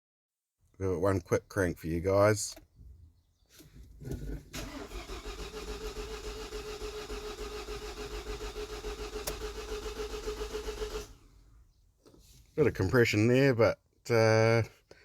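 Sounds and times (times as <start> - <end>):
engine cranking without starting: 4.0 - 11.3.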